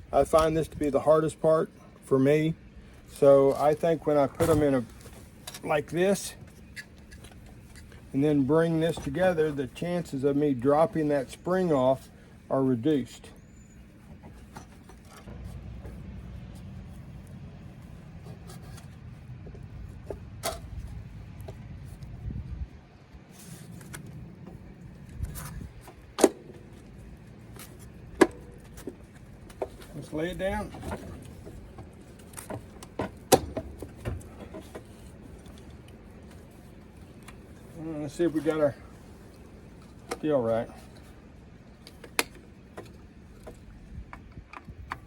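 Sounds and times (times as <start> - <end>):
steady low rumble: 15.2 - 45.0.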